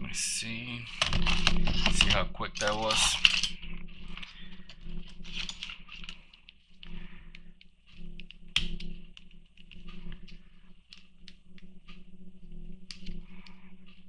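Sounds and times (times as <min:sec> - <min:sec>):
low hum: 0:00.0 - 0:14.0
toy car and drill bit clicking: 0:04.2 - 0:06.2.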